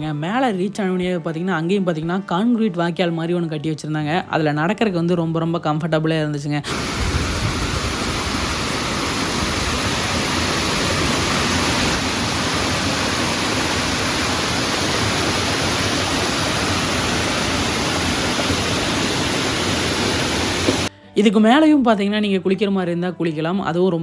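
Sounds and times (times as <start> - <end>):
waterfall and stream rushing: 6.7 - 20.9.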